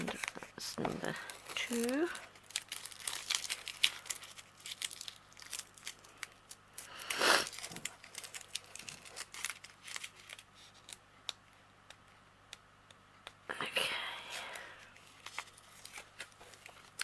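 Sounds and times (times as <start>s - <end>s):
tape being peeled off: 1.8s - 11.0s.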